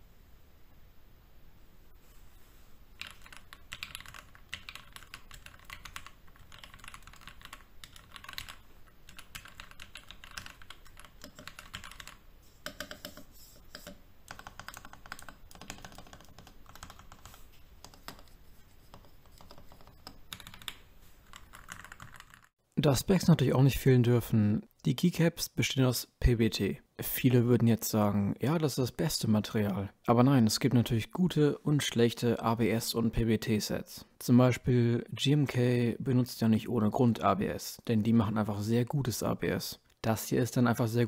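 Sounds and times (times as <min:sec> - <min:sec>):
mechanical keyboard typing: 0:03.0 - 0:18.3, 0:18.9 - 0:22.5.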